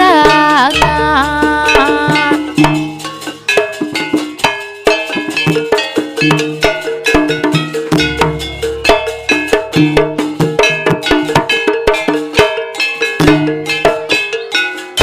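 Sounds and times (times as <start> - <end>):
gamelan ensemble playing: 0.0 - 15.0
deep gong stroke: 8.0 - 10.2.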